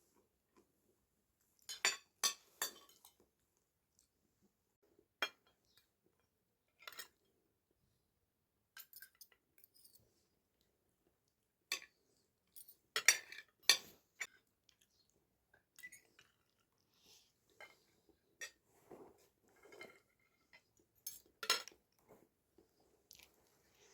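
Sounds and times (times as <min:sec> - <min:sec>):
dishes and cutlery clinking: 0:01.6 - 0:03.2, 0:08.8 - 0:10.0, 0:12.6 - 0:14.3, 0:19.5 - 0:21.8.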